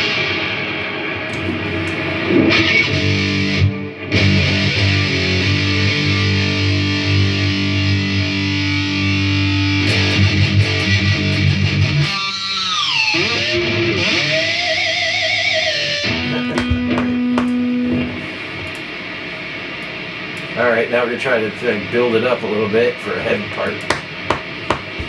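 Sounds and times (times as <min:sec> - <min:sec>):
distorted electric guitar: 0:00.0 - 0:25.0.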